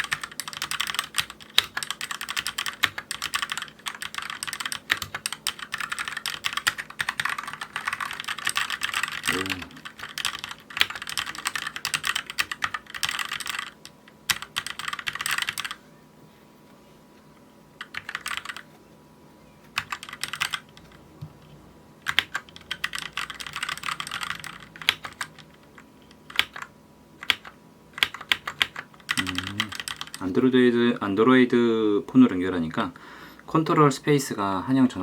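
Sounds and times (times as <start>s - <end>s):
mechanical keyboard typing: 0.0s - 15.8s, 17.8s - 18.6s, 19.8s - 21.0s, 22.0s - 30.3s.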